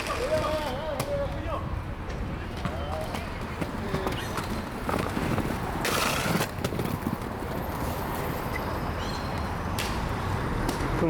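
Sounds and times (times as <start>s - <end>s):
skateboard rolling on pavement: 0.0s - 11.0s
skateboard clicks and knocks: 2.1s - 7.9s.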